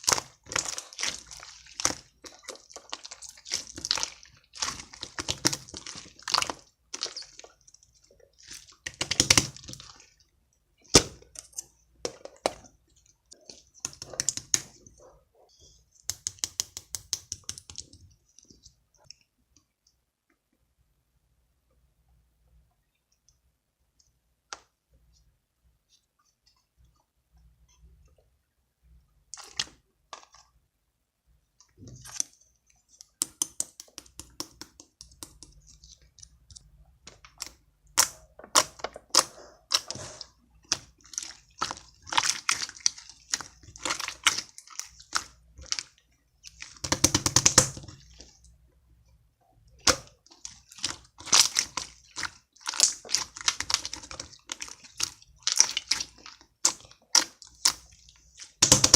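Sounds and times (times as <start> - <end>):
slime crackling: 0.0 - 18.6, 31.8 - 48.5, 49.7 - 58.9
slime squishing with wet clicks: 0.0 - 20.8, 28.9 - 30.7, 31.5 - 58.9.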